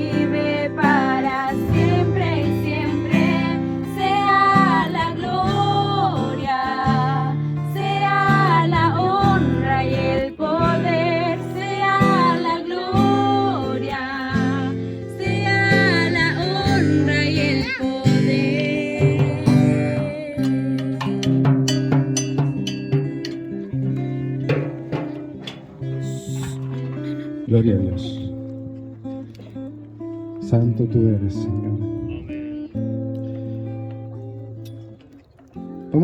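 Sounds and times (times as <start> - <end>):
woman singing: 0.0 - 21.6
guitar chords: 0.0 - 36.0.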